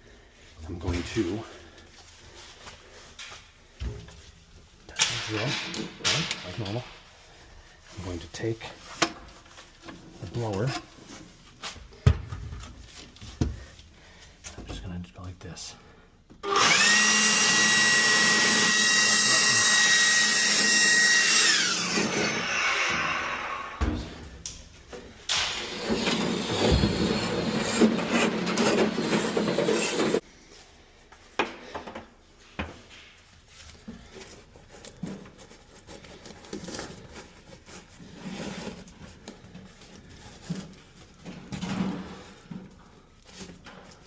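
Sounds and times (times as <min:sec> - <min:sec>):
power tool running: 0:16.4 - 0:23.8, 0:25.3 - 0:30.2.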